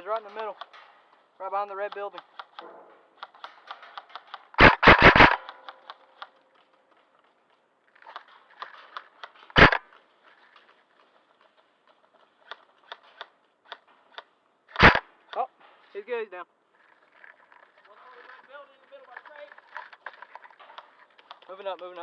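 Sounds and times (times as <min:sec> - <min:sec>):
faint distant airsoft shots: 0:02.1 - 0:06.3
loud airsoft gun shots: 0:02.2 - 0:06.0, 0:09.5 - 0:09.8, 0:14.7 - 0:15.1.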